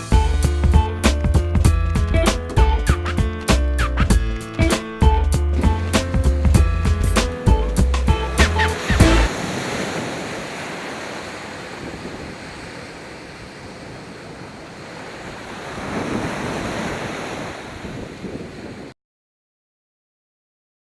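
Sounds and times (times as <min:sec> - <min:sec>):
surf: 0:00.0 - 0:18.9
wind buffeting microphone: 0:05.6 - 0:18.9.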